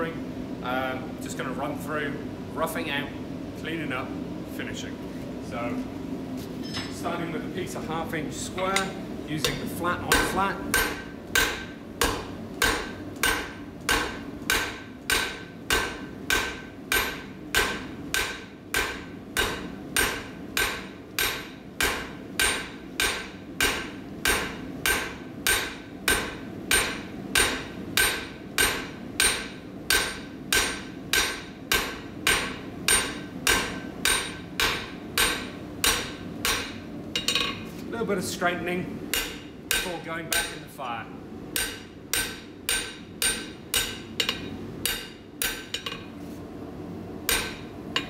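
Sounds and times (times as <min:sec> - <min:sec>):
hammer striking hot steel on anvil: 0:08.7 - 0:37.6, 0:39.1 - 0:40.7, 0:41.5 - 0:46.1, 0:47.3 - 0:48.0.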